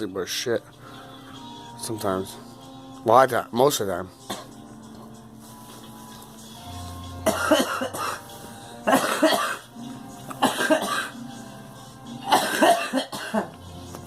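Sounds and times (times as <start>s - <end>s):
girl coughing: 4.3s - 4.6s, 7.2s - 8.2s, 8.8s - 9.7s, 10.4s - 11.2s, 12.2s - 13.6s.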